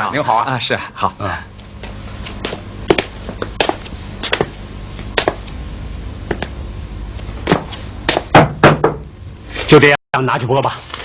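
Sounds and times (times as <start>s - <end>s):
sharp knocks: 7.5s - 9.1s.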